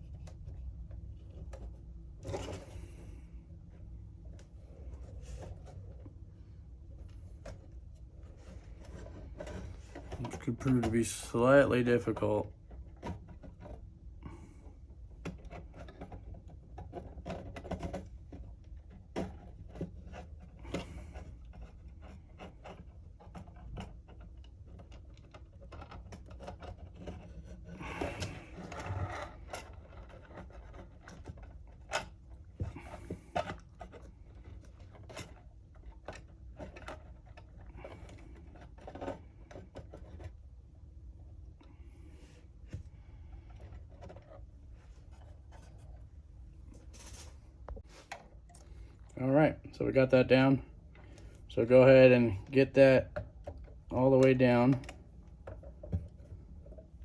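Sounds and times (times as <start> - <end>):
plastic scraping and rubbing: 0.0 - 49.1, 50.0 - 57.0
low steady hum: 0.0 - 57.0
plastic parts clicking and knocking: 15.0 - 40.5, 52.3 - 57.0.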